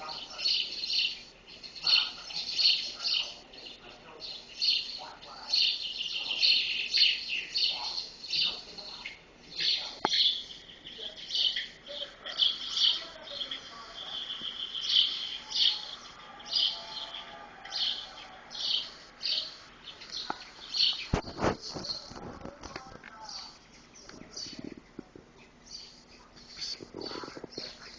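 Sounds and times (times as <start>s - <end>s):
small birds chirping: 0.0s - 27.9s.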